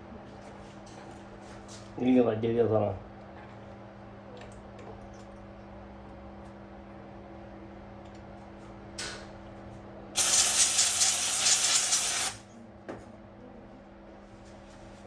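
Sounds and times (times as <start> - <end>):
pressurised jet hissing: 10.2 - 12.4.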